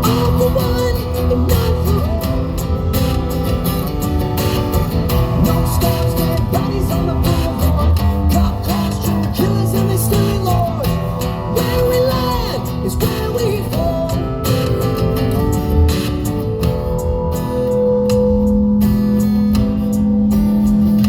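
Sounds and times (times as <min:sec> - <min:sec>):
electric guitar bending lines: 0:00.0 - 0:21.0
live rock band playing: 0:00.0 - 0:21.0.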